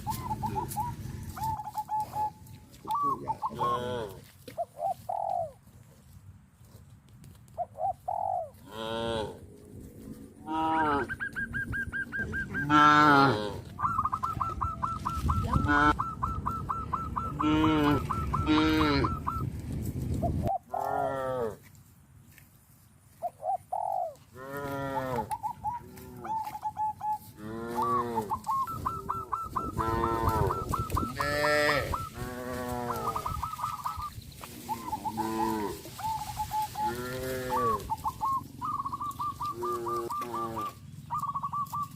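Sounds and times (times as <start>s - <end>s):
farm fowl pulsed calls: 0.0s - 5.6s, 10.4s - 19.5s, 23.1s - 41.9s
cattle mooing: 3.4s - 4.3s, 8.6s - 9.5s, 10.4s - 11.2s, 12.6s - 13.7s, 17.3s - 19.2s, 24.4s - 26.3s, 27.4s - 28.5s, 29.7s - 33.2s, 34.6s - 36.0s, 36.8s - 37.9s, 39.5s - 40.8s.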